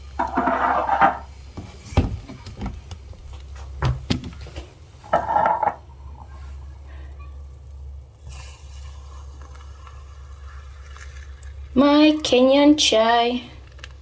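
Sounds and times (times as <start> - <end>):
kitchenware knocks and clinks: 0.2 - 1.3, 5.1 - 5.8.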